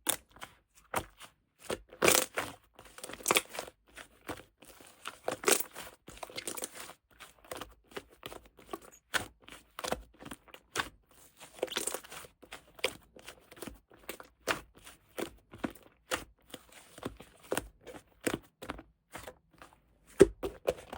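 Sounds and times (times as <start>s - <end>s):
hands squeezing slime: 4.8s - 7.0s, 10.7s - 13.5s.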